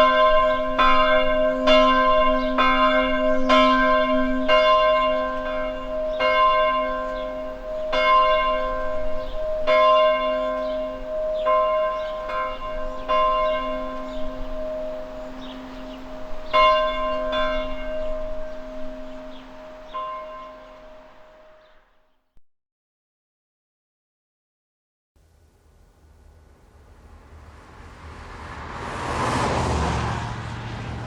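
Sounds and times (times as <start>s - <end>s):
large bell tolling: 0.0s - 21.8s.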